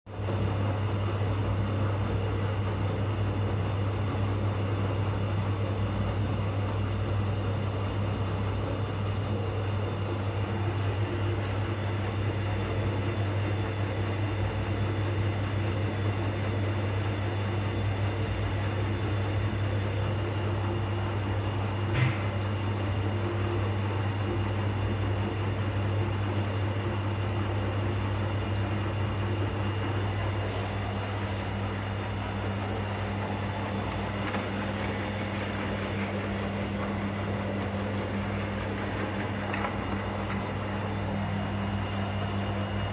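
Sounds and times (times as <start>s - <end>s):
washing machine humming: 0.1s - 42.9s.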